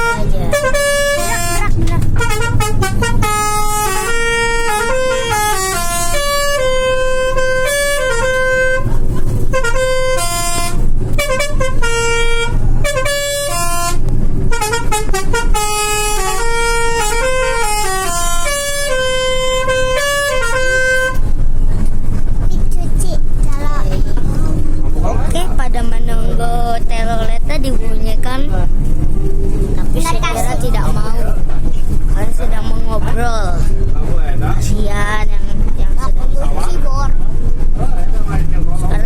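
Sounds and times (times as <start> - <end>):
bus musical horn playing a tune: 0.0 - 22.2, 28.6 - 34.1.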